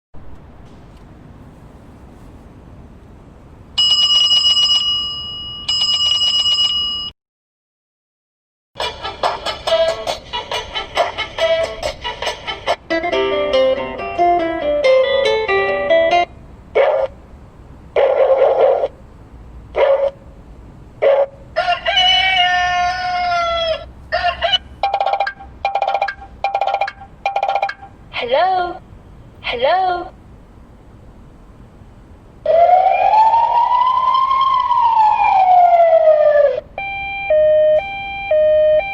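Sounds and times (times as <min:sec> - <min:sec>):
electronic bell ringtone: 0:03.8 - 0:07.1, 0:24.8 - 0:27.9, 0:36.8 - 0:38.9
rooster crowing through car speaker: 0:21.5 - 0:24.4.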